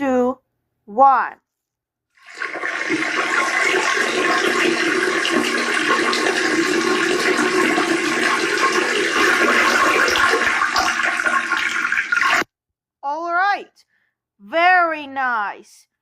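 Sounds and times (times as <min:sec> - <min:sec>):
urine splashing into toilet water: 0:02.2 - 0:12.5.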